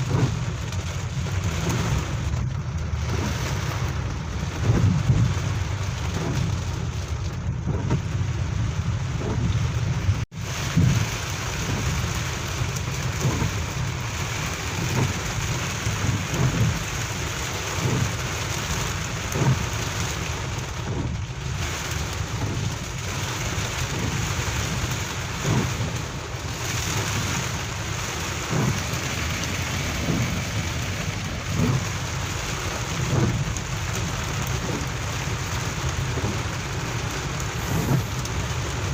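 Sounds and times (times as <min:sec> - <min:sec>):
heavy rain pouring: 0:00.0 - 0:38.9
low rumble: 0:23.9 - 0:38.9.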